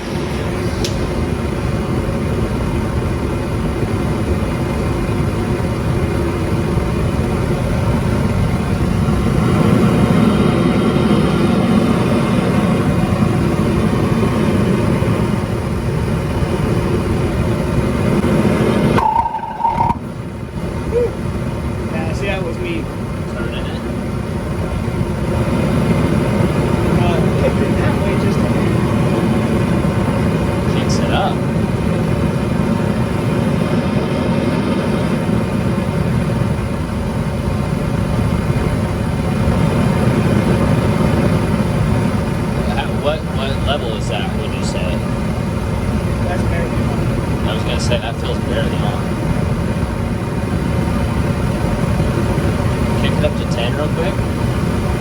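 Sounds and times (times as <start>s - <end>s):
gas burner rushing: 0.0s - 55.0s
brief steady tone: 18.9s - 20.1s.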